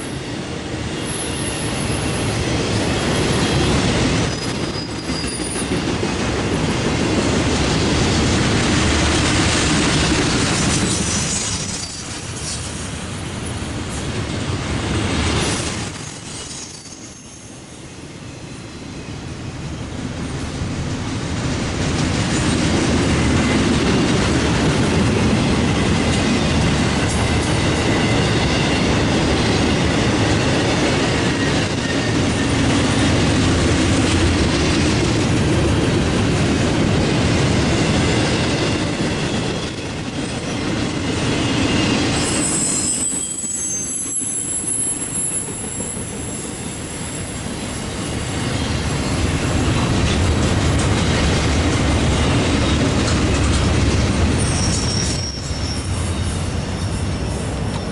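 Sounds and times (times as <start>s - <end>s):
steel wheels rumbling on rail: 0.0s - 57.9s
wheels squealing: 2.9s - 5.8s, 40.2s - 50.2s, 54.3s - 57.9s
clatter over rail joints: 49.7s - 55.2s.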